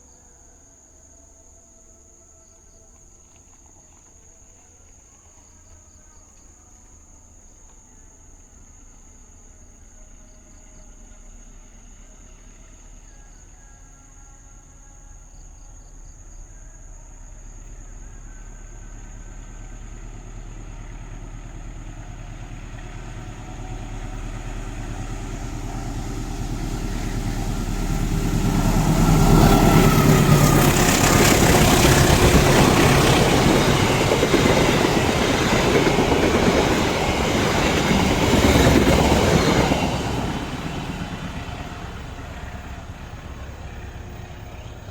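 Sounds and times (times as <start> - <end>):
train wheels rumbling on rails: 17.6 - 44.9.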